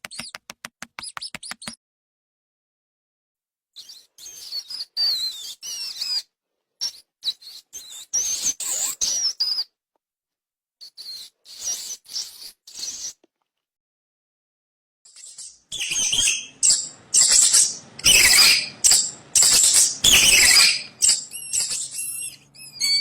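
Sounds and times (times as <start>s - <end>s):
mouse squeaking: 3.8s - 9.7s, 10.8s - 13.2s, 15.1s - 23.0s.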